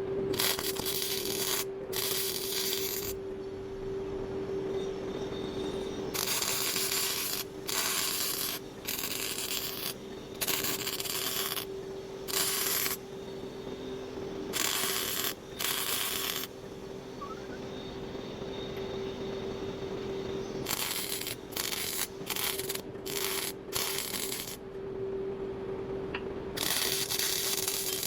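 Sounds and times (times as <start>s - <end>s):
steady hum: 0.0s - 28.0s
aerosol spray paint hissing: 12.2s - 13.0s.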